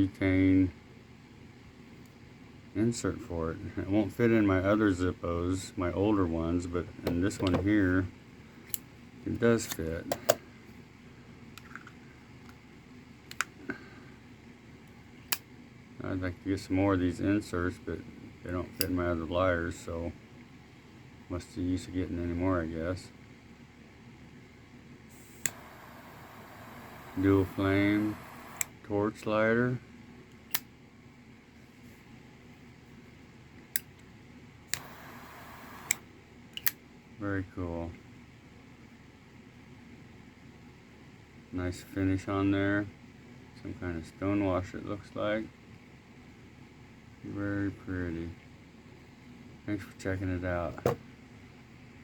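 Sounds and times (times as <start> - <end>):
torch flame hissing: 25.1 - 28.7, 34.7 - 36.0
lighter clicks: 34.7 - 36.0.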